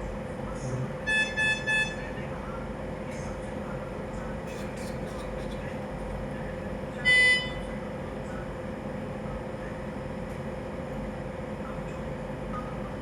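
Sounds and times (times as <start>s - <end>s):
constant mid-pitched hum: 0.0s - 13.0s.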